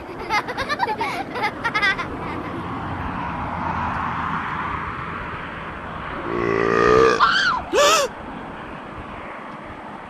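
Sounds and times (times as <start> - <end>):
low buzzy belch-like sound: 6.2 - 7.2.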